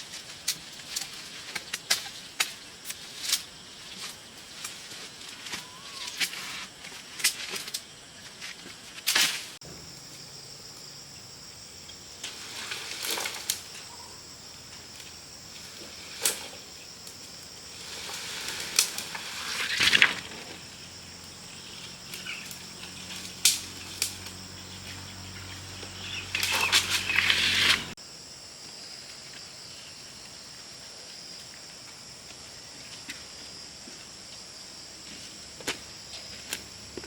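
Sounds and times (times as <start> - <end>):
insects droning: 0.0 - 37.0.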